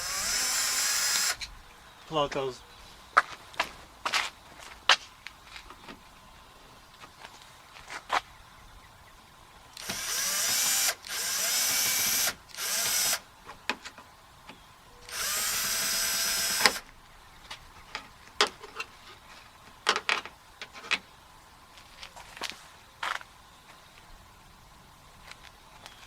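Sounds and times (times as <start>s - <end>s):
power drill running: 0.0s - 1.4s, 9.8s - 13.2s, 15.1s - 16.8s.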